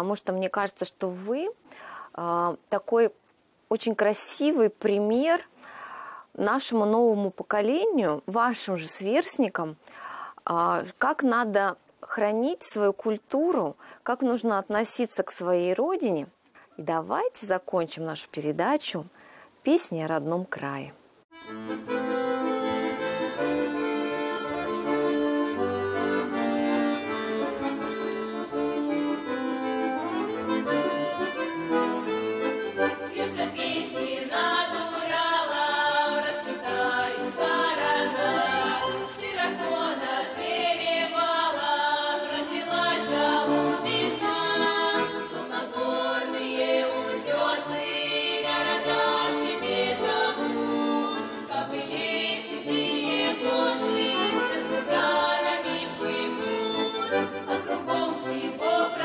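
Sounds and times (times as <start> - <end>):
accordion playing: 21.3 - 59.0
children singing: 33.1 - 59.0.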